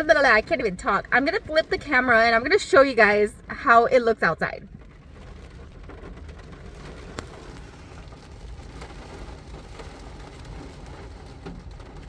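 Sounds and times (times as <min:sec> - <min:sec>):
rain hissing on car: 0:00.0 - 0:12.0
raindrops tapping on glass: 0:00.0 - 0:12.0.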